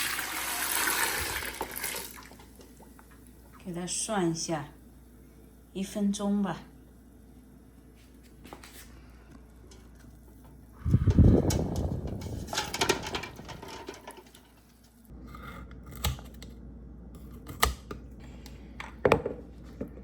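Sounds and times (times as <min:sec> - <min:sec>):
rustling clatter: 0:10.9 - 0:15.0.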